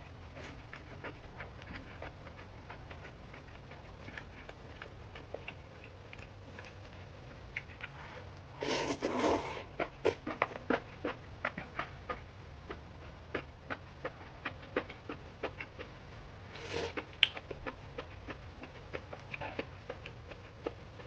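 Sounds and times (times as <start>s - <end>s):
chewing clicks: 0.4s - 8.0s, 16.6s - 21.0s.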